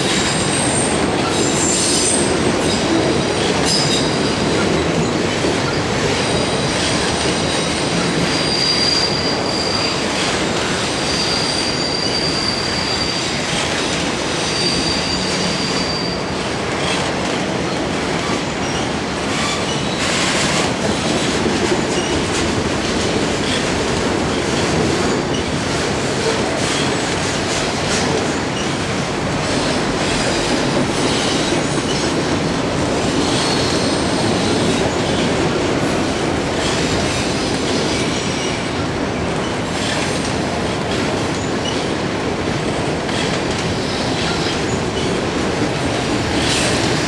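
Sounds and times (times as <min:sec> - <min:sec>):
high-pitched wheel squeal: 0:06.4 - 0:13.6, 0:14.2 - 0:16.3.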